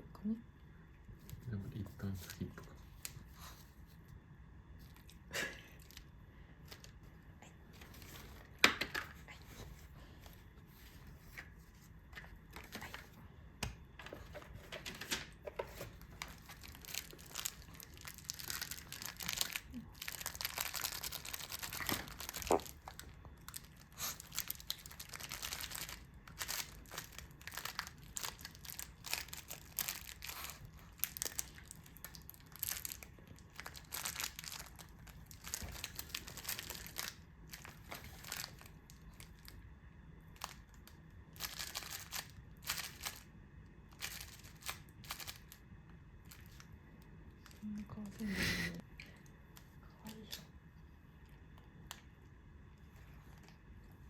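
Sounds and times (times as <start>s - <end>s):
crinkling material rustling: 14.0s - 39.5s, 40.4s - 43.3s, 43.9s - 45.6s, 46.2s - 46.7s.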